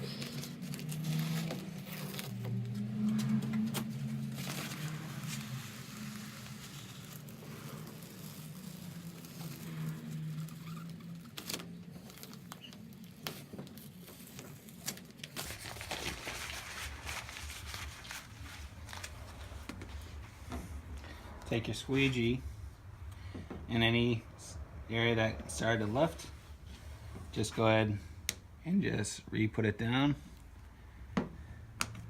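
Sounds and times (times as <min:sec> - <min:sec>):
paper backing peeling and crinkling: 0:00.0 - 0:20.5.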